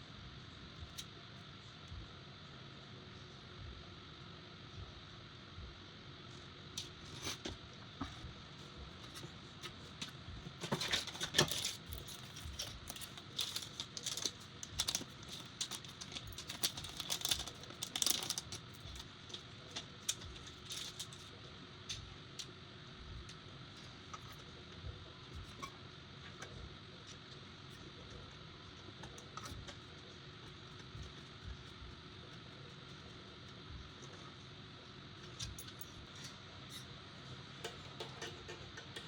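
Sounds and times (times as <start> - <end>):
computer parts clicking and rustling: 9.1 - 22.5.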